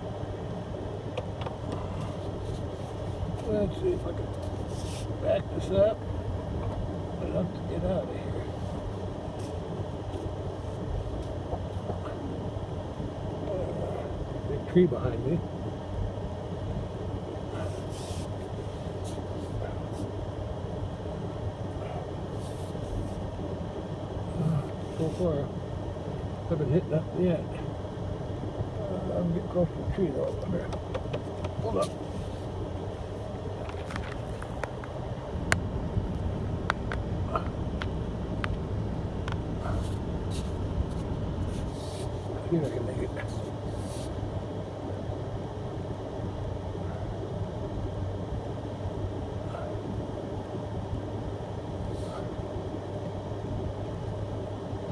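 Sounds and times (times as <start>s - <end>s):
truck engine running: 0.0s - 44.8s
short brushing noises: 39.6s - 42.3s.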